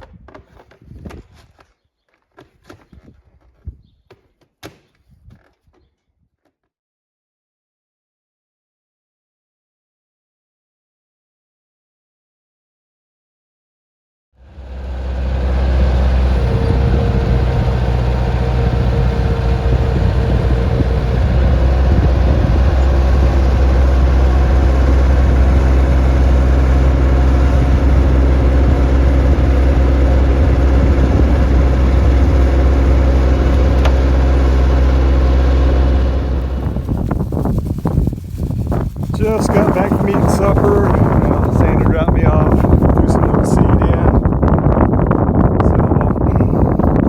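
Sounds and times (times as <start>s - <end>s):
tractor engine droning: 14.4s - 47.0s.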